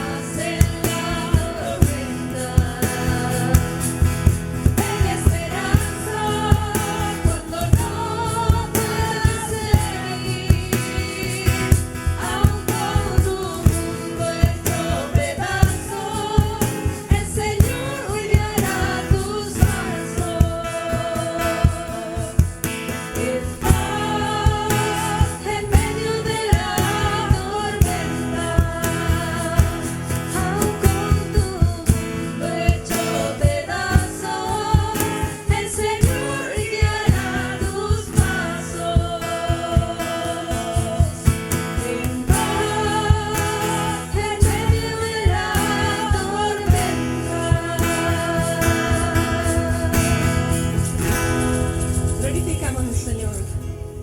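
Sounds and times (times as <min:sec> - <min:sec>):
worship song singing: 0:00.0 - 0:54.0
band playing: 0:50.3 - 0:54.0.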